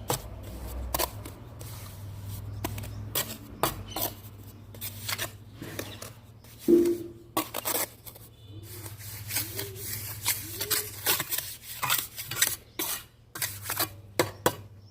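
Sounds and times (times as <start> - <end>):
hand tools scraping and clinking: 2.6 - 14.0.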